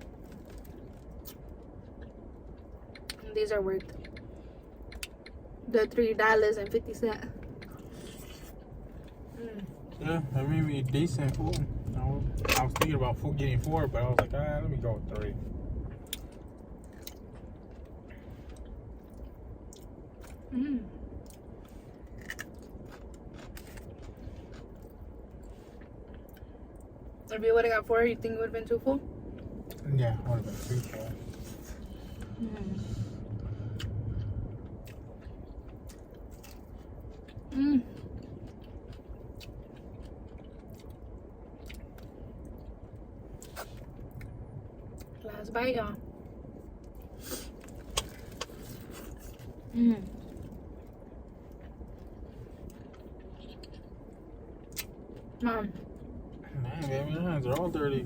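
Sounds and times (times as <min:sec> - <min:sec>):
close chewing with mouth clicks: 0:00.0 - 0:05.4, 0:06.6 - 0:11.8, 0:15.9 - 0:26.9, 0:29.3 - 0:45.2, 0:46.2 - 0:58.0
low background hum: 0:00.0 - 0:58.0.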